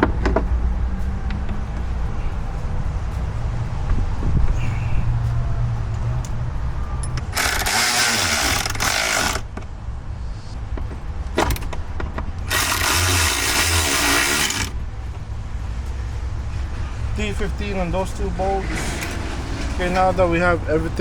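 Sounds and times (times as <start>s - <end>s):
power driver running bolts: 7.1s - 9.5s, 12.4s - 14.8s, 18.5s - 20.2s.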